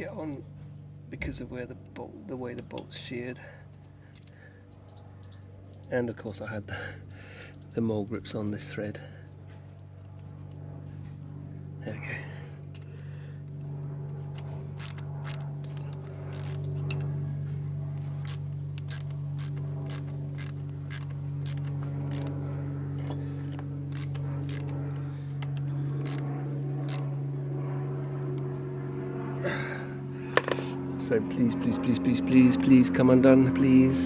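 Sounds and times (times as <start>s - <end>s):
steady low hum: 0.0s - 34.0s
metallic tool clicks and scrapes: 14.8s - 17.1s, 18.2s - 22.4s, 23.9s - 24.8s, 25.4s - 27.0s.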